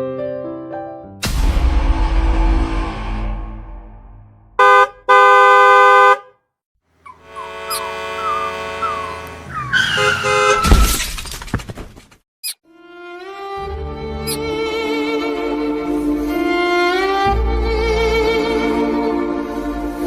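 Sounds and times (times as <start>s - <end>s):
vehicle horn honking: 4.6s - 6.4s, 7.0s - 10.7s
sliding squeaky tones: 7.0s - 11.1s.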